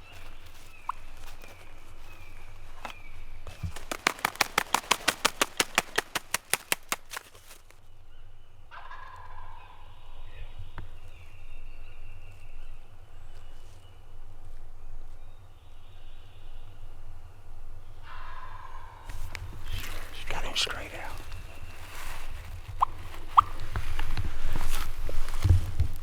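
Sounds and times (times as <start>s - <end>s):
wild turkey calling: 0.0s - 3.0s, 8.7s - 10.4s, 18.0s - 25.7s.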